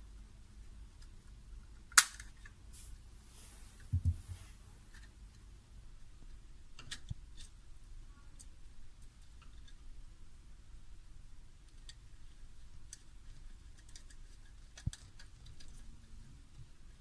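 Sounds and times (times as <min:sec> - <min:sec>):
dull knocks: 0:03.9 - 0:04.4.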